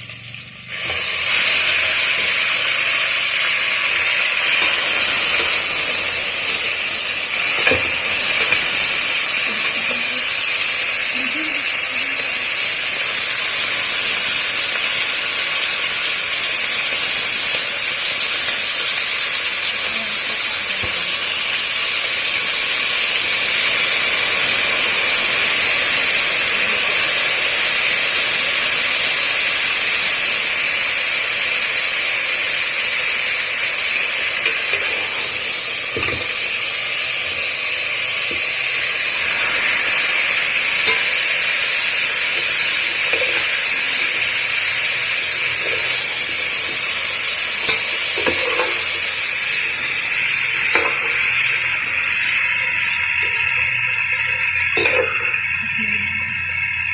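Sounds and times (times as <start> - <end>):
chicken sizzling in hot oil: 0.0 - 56.9.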